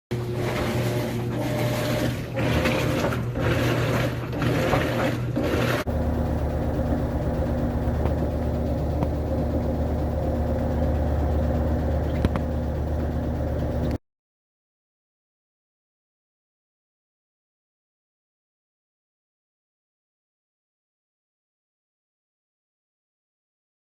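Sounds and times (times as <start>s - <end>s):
low motor hum: 0.1s - 14.0s
washing machine pulsing: 0.1s - 14.0s.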